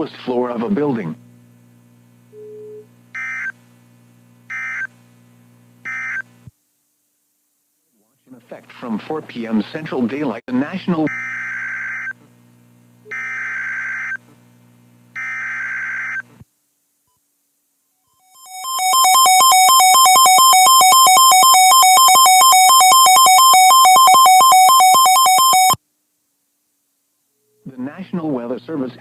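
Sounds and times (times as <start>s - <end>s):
buzzing data bursts: 3.2s - 3.5s, 4.5s - 4.9s, 5.8s - 6.3s, 13.1s - 14.2s, 15.2s - 16.3s, 18.2s - 25.8s
pulsing electronic alert tone: 18.2s - 25.8s.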